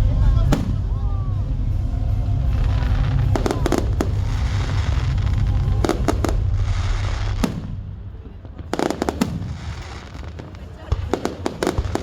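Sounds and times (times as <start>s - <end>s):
low rumble and crackling: 0.0s - 12.0s
aerial firework shells banging: 2.6s - 12.0s.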